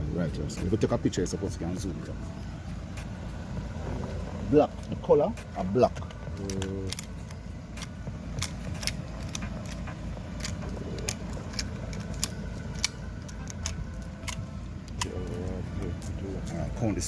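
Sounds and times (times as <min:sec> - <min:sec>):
low steady rumble: 0:00.0 - 0:17.0
metallic clicks and clinks: 0:04.7 - 0:15.4.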